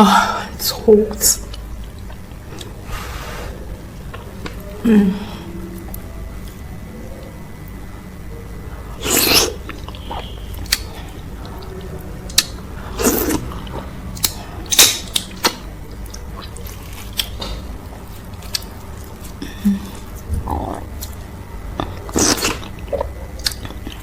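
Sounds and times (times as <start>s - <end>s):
mouth clicks while chewing: 21.8s - 24.0s.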